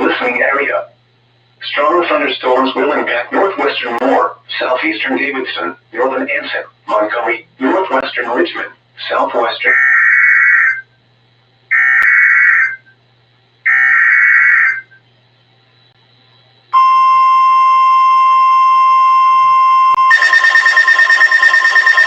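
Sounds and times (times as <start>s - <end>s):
rapidly pulsing alarm: 9.4s - 11.0s, 11.7s - 13.0s, 13.6s - 15.0s, 16.7s - 22.0s
steady warning alarm tone: 9.5s - 10.9s, 11.7s - 13.0s, 13.7s - 15.0s, 16.7s - 22.0s.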